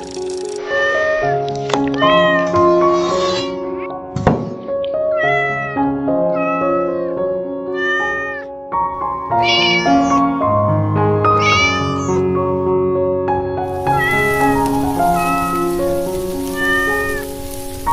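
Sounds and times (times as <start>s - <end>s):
background music: 0.0s - 17.9s
cat meowing: 0.6s - 2.6s, 5.1s - 8.5s, 9.3s - 10.3s, 11.3s - 12.2s, 13.7s - 17.5s
sharp knock: 4.2s - 4.6s.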